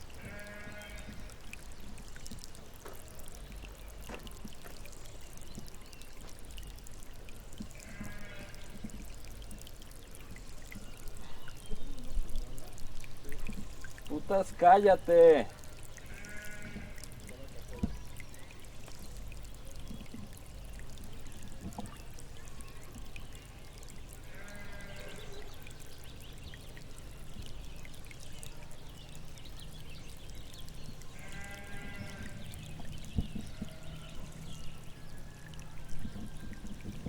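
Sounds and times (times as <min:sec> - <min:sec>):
distant sheep bleating: 0:00.2 - 0:01.3, 0:07.8 - 0:08.6, 0:16.0 - 0:17.0, 0:24.2 - 0:25.2, 0:31.1 - 0:32.5.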